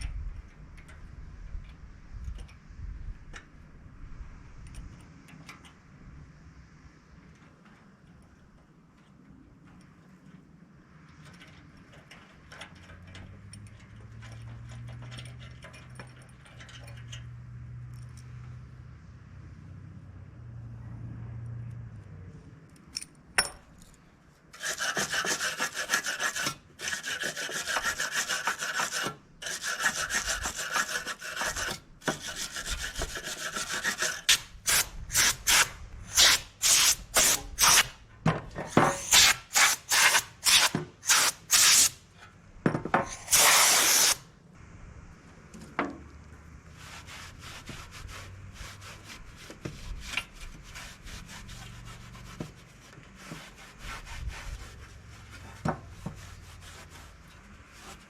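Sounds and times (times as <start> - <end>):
hand scrubbing on metal: 24.6 - 38.0, 38.7 - 42.0, 43.0 - 44.2, 46.7 - 58.0
loud hiss: 38.8 - 42.0, 43.1 - 44.2.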